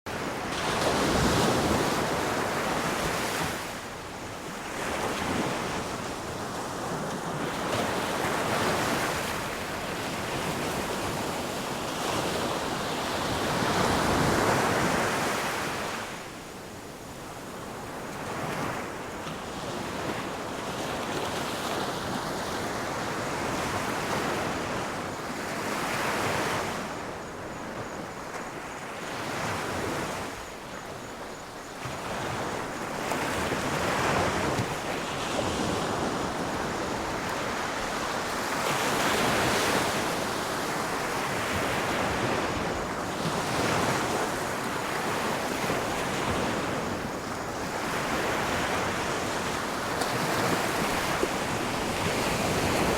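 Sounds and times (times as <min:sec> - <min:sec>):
ocean waves breaking on shore: 0:00.1 - 0:52.9.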